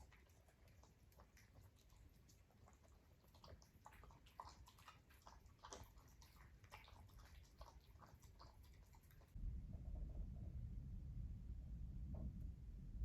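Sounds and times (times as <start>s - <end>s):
cat chewing dry food: 0.0s - 9.4s.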